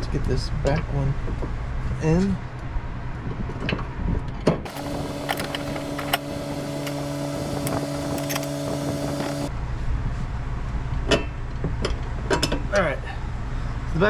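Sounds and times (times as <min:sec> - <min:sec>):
steady hum: 0:04.7 - 0:12.0.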